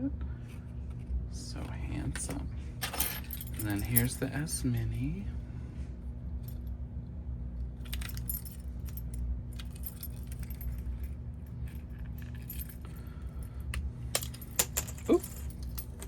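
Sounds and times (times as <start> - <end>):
keys clinking and rattling: 2.8 - 5.1, 6.4 - 6.7, 7.8 - 16.0.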